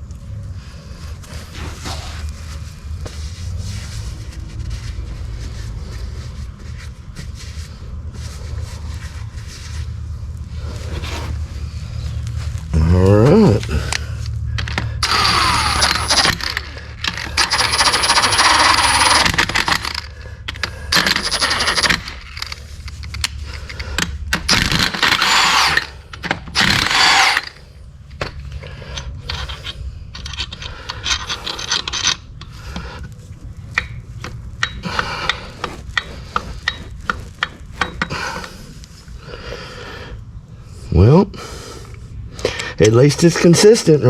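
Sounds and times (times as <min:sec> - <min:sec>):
power tool bursts: 0:15.0 - 0:20.0, 0:24.5 - 0:27.6.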